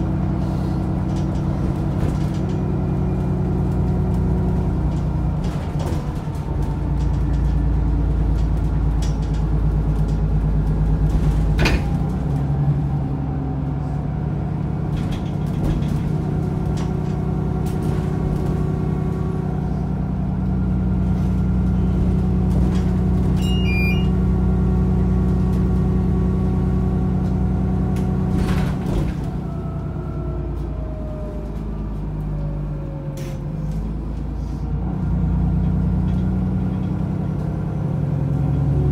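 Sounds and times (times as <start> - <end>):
bus engine drone: 0.0 - 38.9
short high beep: 23.4 - 24.1.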